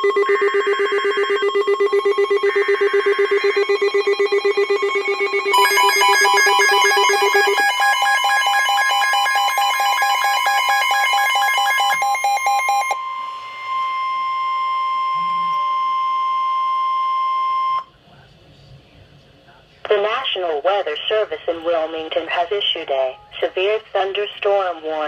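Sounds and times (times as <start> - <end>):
pulsing electronic alarm beeps: 0.0 - 17.9
steady warning tone: 0.0 - 17.9.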